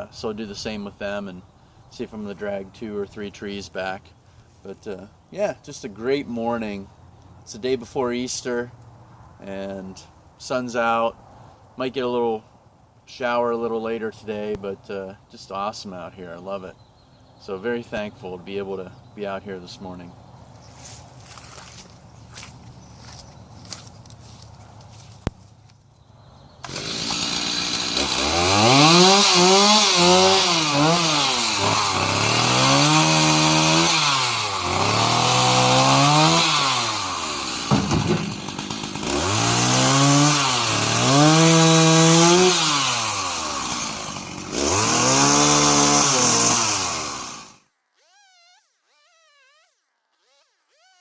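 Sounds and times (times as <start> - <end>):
chainsaw revving: 26.6 - 51.0.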